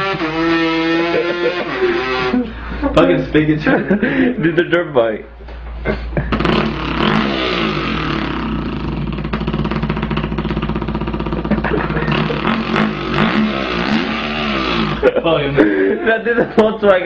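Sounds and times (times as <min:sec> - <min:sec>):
man imitating motorcycle engine: 0:00.0 - 0:02.6, 0:06.0 - 0:15.6.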